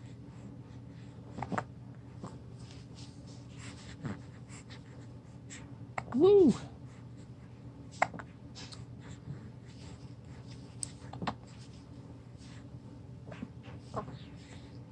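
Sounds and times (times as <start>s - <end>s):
steady low hum: 0.0s - 14.9s.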